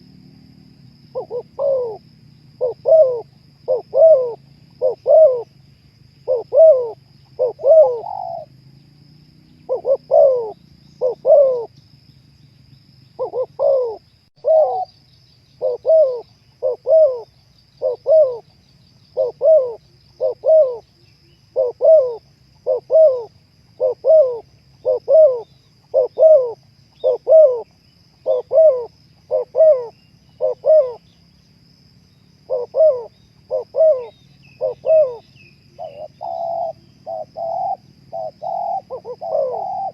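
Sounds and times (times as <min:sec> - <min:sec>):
dove cooing: 0:01.1 - 0:05.6, 0:06.2 - 0:08.6, 0:09.6 - 0:11.7, 0:13.2 - 0:15.0, 0:15.6 - 0:20.9, 0:21.5 - 0:31.1, 0:32.4 - 0:39.9.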